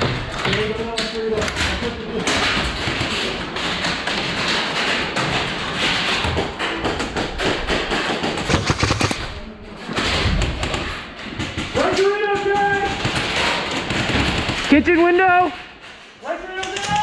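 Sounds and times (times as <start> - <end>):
airsoft clicks and knocks: 2.3 - 9.3.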